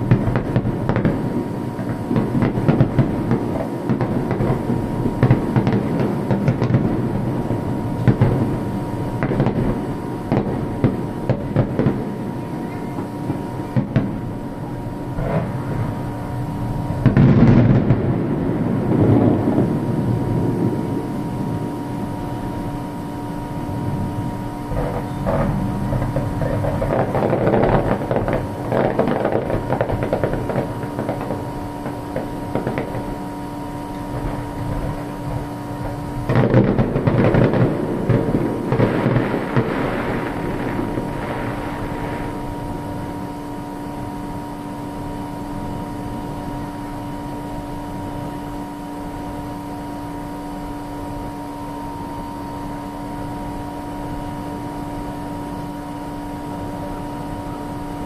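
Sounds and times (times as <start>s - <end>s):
fireworks bursting: 0.0s - 51.3s
steady hum: 0.0s - 58.0s.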